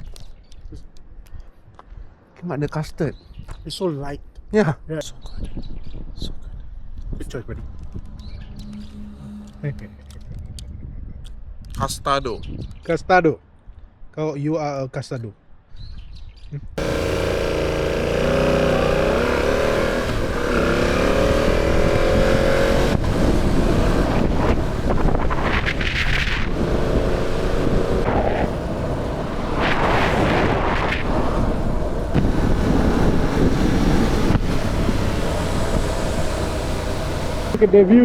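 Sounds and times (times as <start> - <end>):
wind rush: 5.5 - 12.8, 19.2 - 37.6
motorcycle engine accelerating: 16.8 - 38.0.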